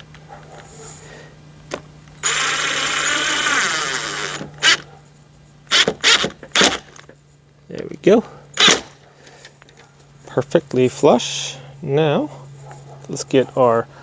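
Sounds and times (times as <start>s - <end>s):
cordless drill driving screw: 2.2s - 4.8s, 5.7s - 6.9s, 8.6s - 8.9s.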